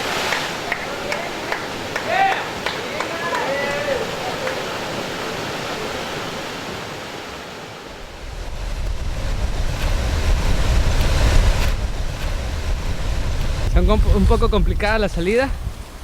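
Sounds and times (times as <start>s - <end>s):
waterfall rushing: 0.0s - 16.0s
wind buffeting microphone: 7.9s - 16.0s.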